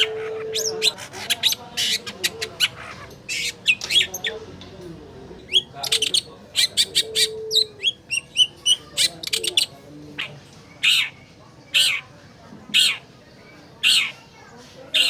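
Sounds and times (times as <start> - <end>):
harsh bird calls: 0.0 - 4.6, 5.3 - 15.0.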